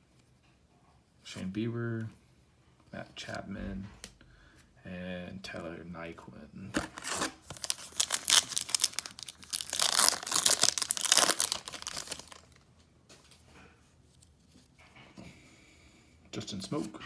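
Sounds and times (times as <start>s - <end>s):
card pack wrapper tearing and crinkling: 6.8s - 12.6s.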